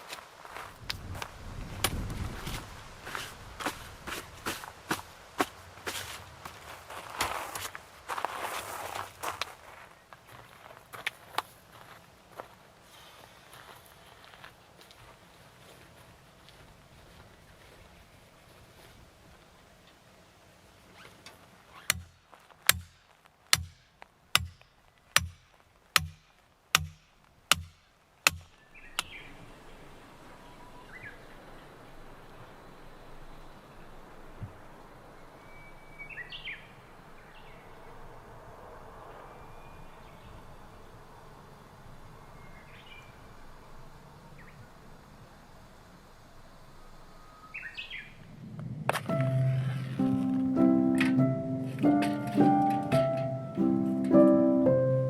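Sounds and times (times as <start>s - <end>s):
faint outdoor background noise: 0.0s - 55.0s
sharp cracking strikes with thuds: 21.9s - 28.6s
bird chirps: 47.2s - 48.2s.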